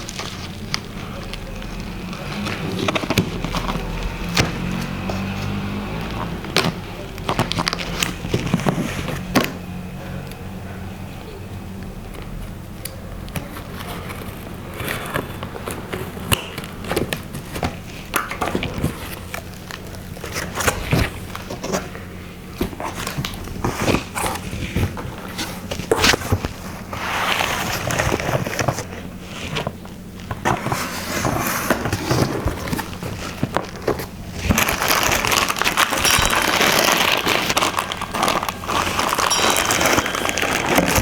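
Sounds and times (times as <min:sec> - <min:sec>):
packaging scraping and rustling: 0:00.0 - 0:09.8, 0:12.2 - 0:41.0.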